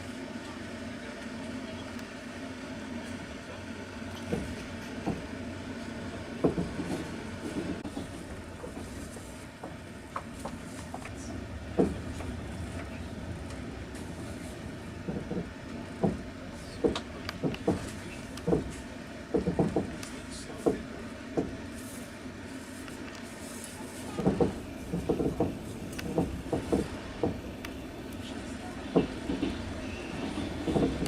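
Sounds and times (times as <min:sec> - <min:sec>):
train wheels rumbling on rails: 0:00.0 - 0:31.0
wheels clacking over track: 0:24.2 - 0:31.0.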